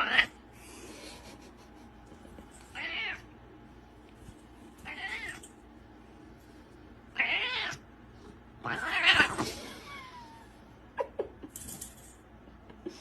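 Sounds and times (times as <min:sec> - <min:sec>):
cat meowing: 0:02.7 - 0:03.2, 0:04.8 - 0:05.4, 0:07.2 - 0:07.8, 0:08.6 - 0:09.4.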